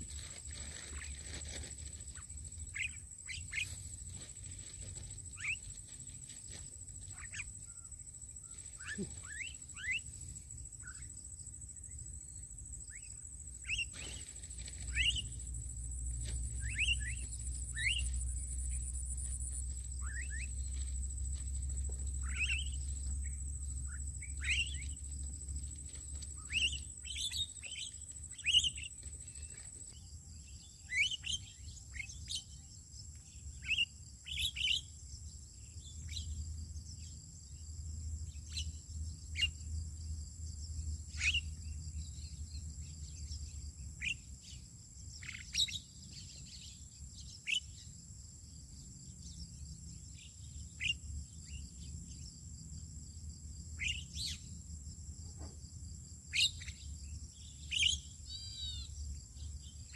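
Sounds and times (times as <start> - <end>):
birds chirping: 12.9 - 25.3, 25.9 - 32.6, 56.3 - 59.9.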